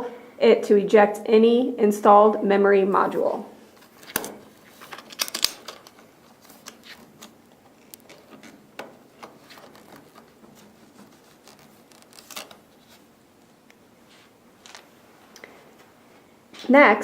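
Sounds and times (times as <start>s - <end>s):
faint plastic clicks and scrapes: 4.2s - 12.6s.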